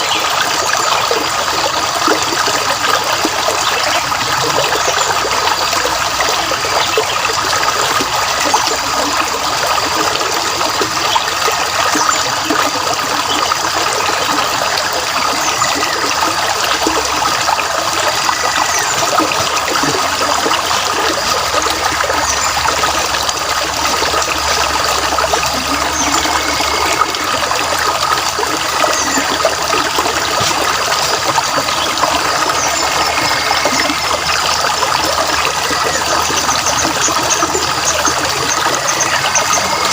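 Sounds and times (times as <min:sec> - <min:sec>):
stream trickling: 0:00.0 - 0:39.9.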